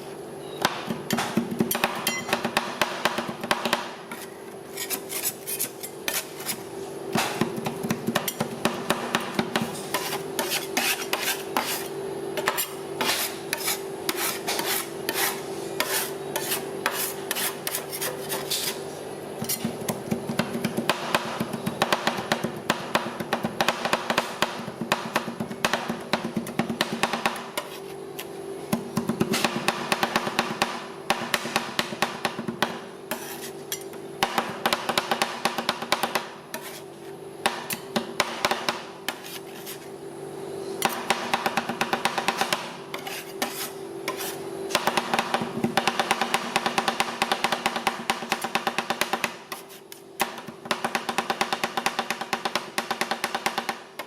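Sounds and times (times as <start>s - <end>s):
metal spatulas scraping cold plate: 4.1s - 6.6s, 9.7s - 19.8s, 33.1s - 33.9s, 36.5s - 36.9s, 39.1s - 39.9s, 42.9s - 44.4s.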